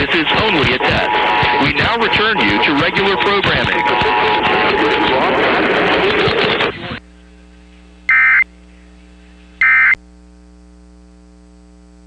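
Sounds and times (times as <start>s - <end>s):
steady low hum: 6.8s - 12.0s
data tone bursts: 8.1s - 8.5s, 9.6s - 10.0s.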